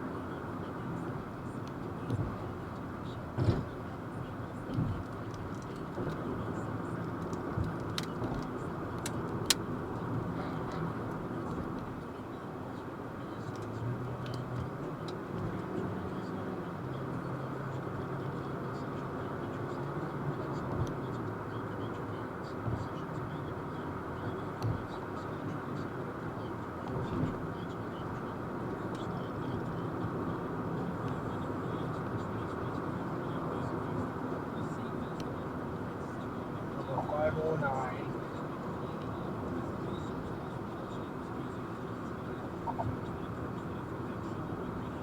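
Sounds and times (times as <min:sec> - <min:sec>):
road and tyre noise: 0:00.0 - 0:45.0
rocks ticking on vehicle: 0:04.4 - 0:10.2, 0:22.6 - 0:44.9.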